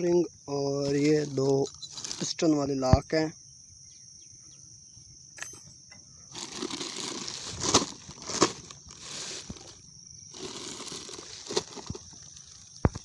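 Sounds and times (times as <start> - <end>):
packaging rustling and crinkling: 0.8 - 2.4, 6.3 - 13.0.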